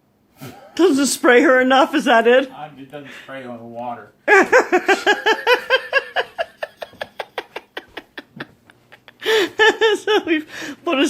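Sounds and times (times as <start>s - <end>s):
person laughing hard: 4.3s - 10.4s.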